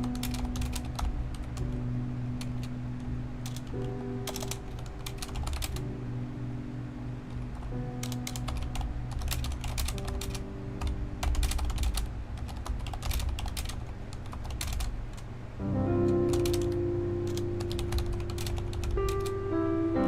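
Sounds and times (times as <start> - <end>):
soft synth music: 0.0 - 20.0
mechanical keyboard key clicks: 3.4 - 5.8, 7.6 - 10.4, 11.2 - 14.9.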